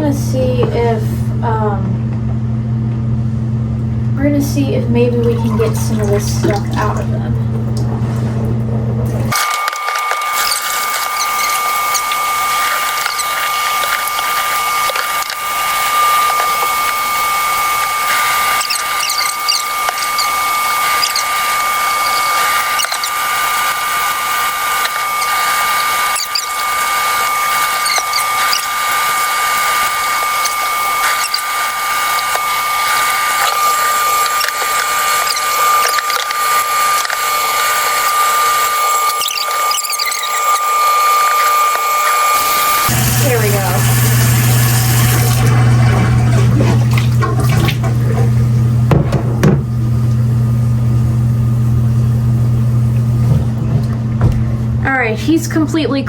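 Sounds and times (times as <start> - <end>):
small electric device whining: 9.1 - 53.4.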